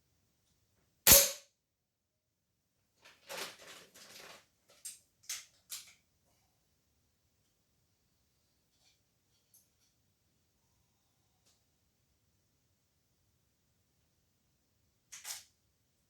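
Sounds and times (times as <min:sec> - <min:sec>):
air rifle shot: 0:01.1 - 0:01.4
rustling and scraping: 0:03.0 - 0:04.8.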